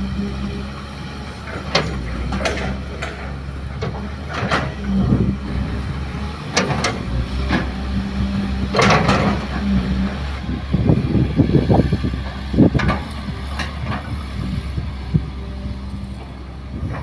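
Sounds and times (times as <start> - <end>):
excavator diesel engine running: 0.0 - 17.0
excavator bucket clanks and scrapes: 1.4 - 5.4, 6.4 - 7.8, 8.6 - 10.2, 10.8 - 14.9, 15.9 - 17.0.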